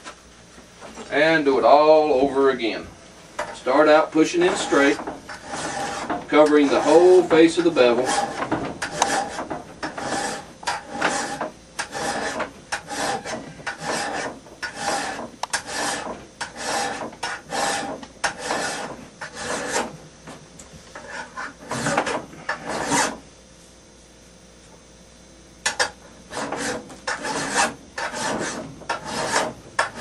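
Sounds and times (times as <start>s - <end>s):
file rasping on steel: 3.4s - 20.0s, 20.9s - 23.2s, 25.7s - 30.0s.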